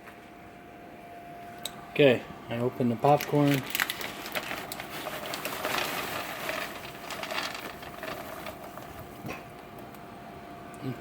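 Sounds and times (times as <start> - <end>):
paper bag rustling and crinkling: 2.7 - 9.6
fine crackling clicks: 3.2 - 9.0.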